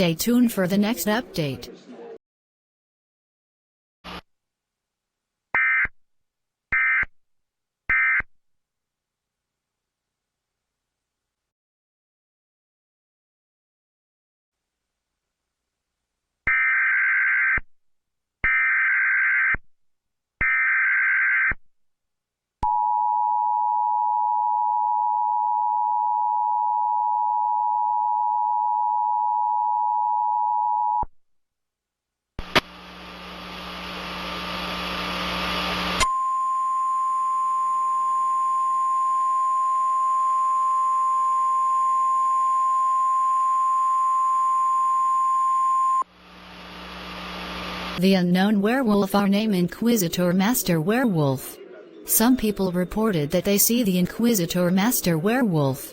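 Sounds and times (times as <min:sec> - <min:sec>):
static hiss: 0:46.1 - 0:48.0.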